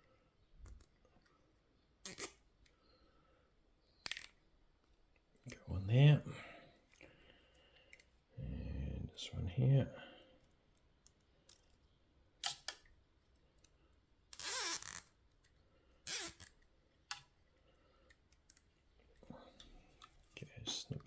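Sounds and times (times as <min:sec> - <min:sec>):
cable ties ratcheting zips: 0:02.0 - 0:02.4, 0:04.1 - 0:04.4, 0:12.4 - 0:12.8, 0:14.3 - 0:15.2, 0:16.0 - 0:17.3.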